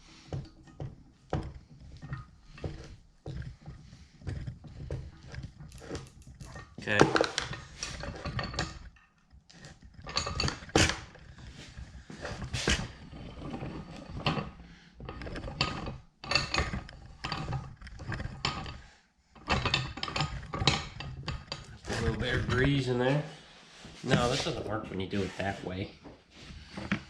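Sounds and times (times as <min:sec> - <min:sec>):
metal parts clinking and rattling: 0:00.6 - 0:18.8, 0:19.4 - 0:22.8.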